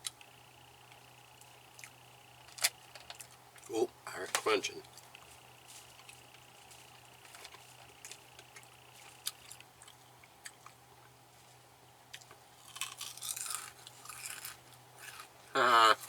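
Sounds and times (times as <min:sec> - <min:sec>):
person chewing crunchy food: 0:01.7 - 0:03.8, 0:04.8 - 0:15.4.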